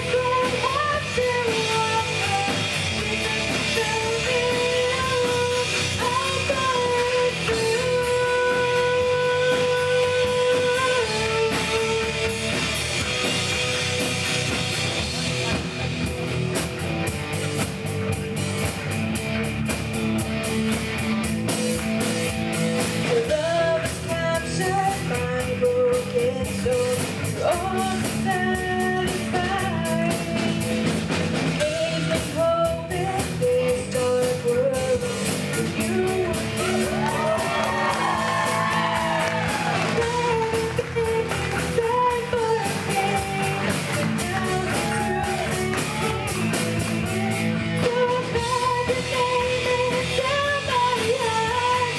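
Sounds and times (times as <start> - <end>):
person singing lead vocals: 0.0 - 12.4, 23.0 - 30.9, 31.5 - 51.9
rock band playing: 0.0 - 51.9.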